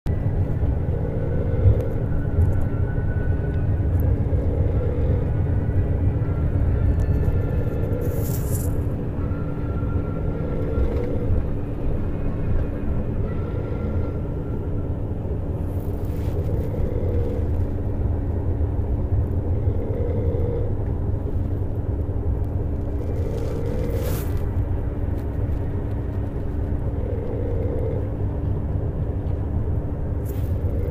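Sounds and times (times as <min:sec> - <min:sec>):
bus engine rumble: 0:00.1 - 0:30.9
woman snoring: 0:19.4 - 0:20.7.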